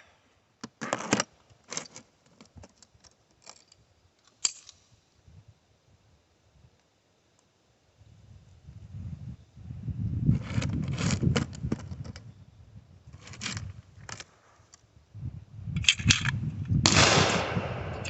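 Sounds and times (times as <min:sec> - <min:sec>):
pistol and gear clicking and rattling: 0:00.8 - 0:04.8, 0:15.8 - 0:16.4.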